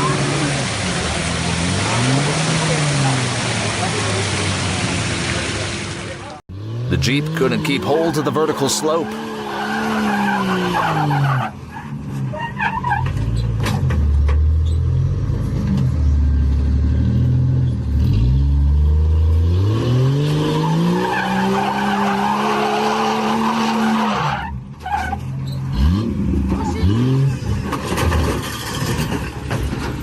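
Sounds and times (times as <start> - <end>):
car engine revving under load: 25.2 - 29.2.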